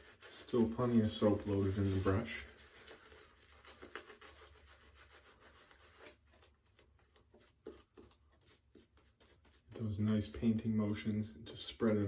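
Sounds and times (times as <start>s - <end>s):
shaving brush swishing on face: 0.0s - 3.0s.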